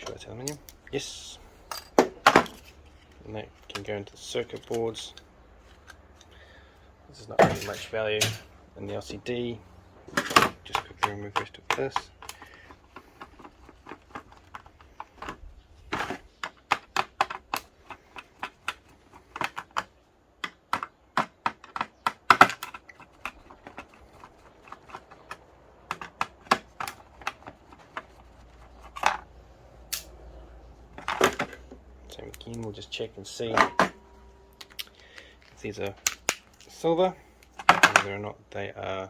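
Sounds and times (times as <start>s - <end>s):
clicks and taps of small parts: 10.4s - 28.1s, 34.5s - 36.7s.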